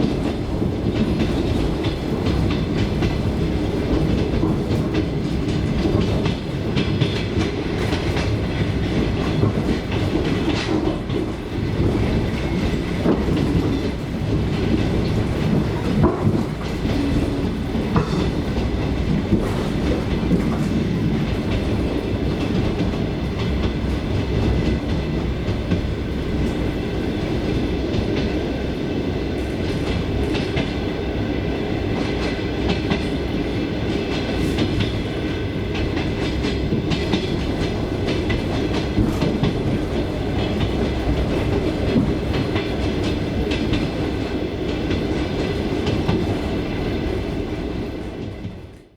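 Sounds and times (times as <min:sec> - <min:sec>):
train running noise: 0:00.0 - 0:48.9
wheels clattering over rails: 0:00.1 - 0:26.7.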